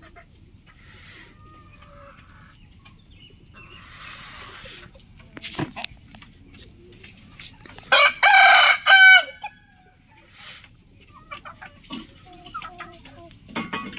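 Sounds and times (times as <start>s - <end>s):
faint chicken clucks: 0.0s - 13.9s
rooster crowing: 7.9s - 9.8s.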